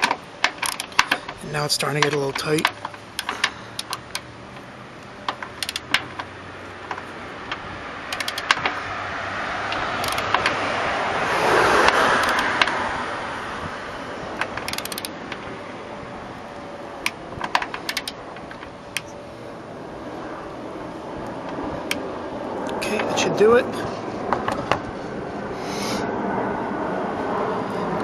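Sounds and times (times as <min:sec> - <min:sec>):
ratcheting torque wrench clicking: 0:00.0 - 0:04.7, 0:05.3 - 0:08.8, 0:09.7 - 0:10.6, 0:11.8 - 0:12.8, 0:14.4 - 0:15.2, 0:17.0 - 0:19.1
vehicle passing: 0:00.0 - 0:28.0.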